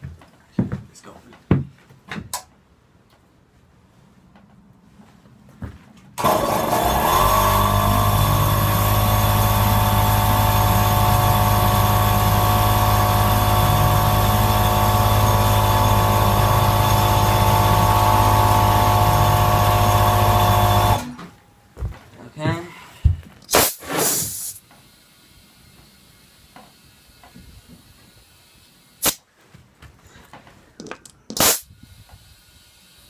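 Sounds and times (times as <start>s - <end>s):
air compressor running: 6.2s - 21.3s, 23.1s - 29.2s.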